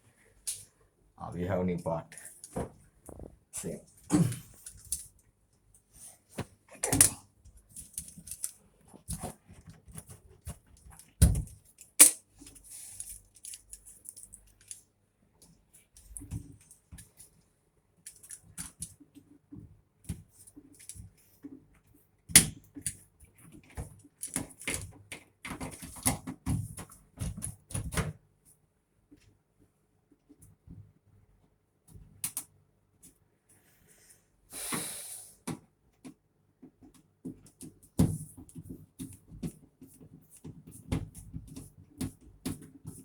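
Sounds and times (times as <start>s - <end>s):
clicks and knocks of handled parts: 4.6s - 5.2s, 6.8s - 17.3s, 18.0s - 19.2s, 20.1s - 21.2s, 22.3s - 28.0s.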